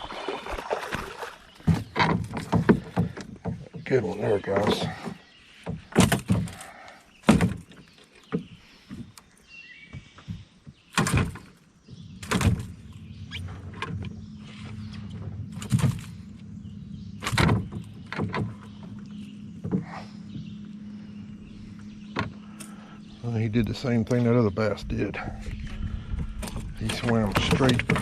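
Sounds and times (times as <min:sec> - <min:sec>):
knocks and thumps in a boat: 0:00.0 - 0:28.0
low motor hum: 0:11.2 - 0:28.0.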